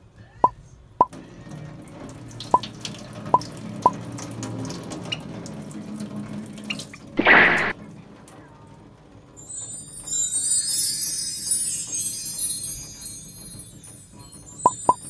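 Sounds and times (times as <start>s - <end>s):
tap running into sink: 1.7s - 6.0s
short sharp plinks: 7.2s - 7.7s
burst of noise: 7.2s - 7.8s.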